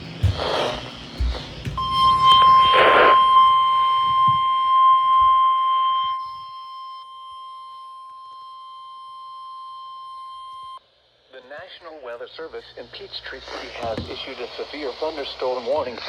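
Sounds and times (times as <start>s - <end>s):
steady alarm tone: 0.0s - 10.7s.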